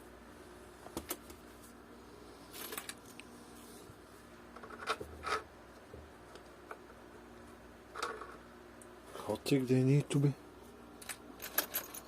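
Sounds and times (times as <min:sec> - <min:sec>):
hardware rattling: 0:11.0 - 0:12.0.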